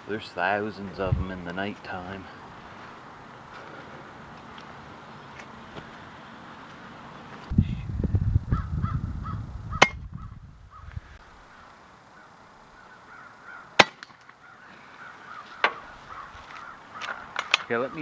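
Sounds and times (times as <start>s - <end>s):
low rumble: 7.5s - 11.2s
crows cawing: 8.6s - 18.0s.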